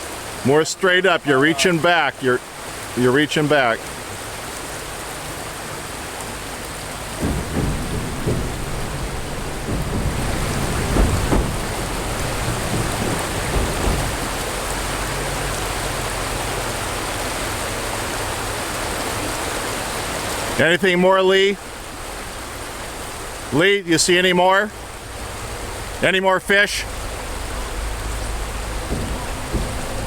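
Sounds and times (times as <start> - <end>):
river water rushing over rocks: 0.0 - 30.0
low rumbles: 6.2 - 16.6, 26.8 - 30.0.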